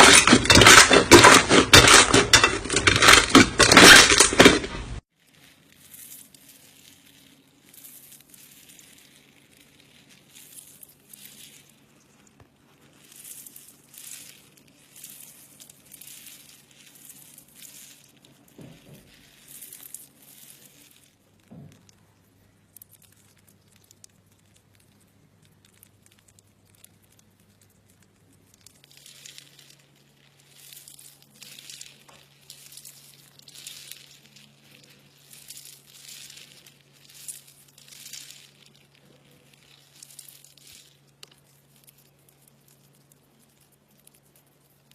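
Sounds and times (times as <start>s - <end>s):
slime squishing: 0.0s - 44.9s.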